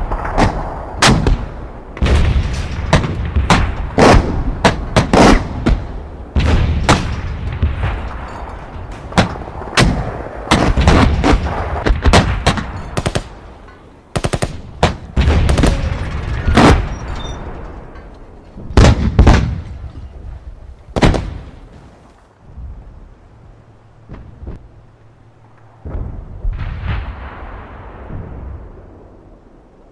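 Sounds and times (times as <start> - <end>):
gunshots: 0.0 - 13.4, 14.1 - 17.6, 18.8 - 19.7, 21.0 - 21.8
low rumble: 0.0 - 29.9.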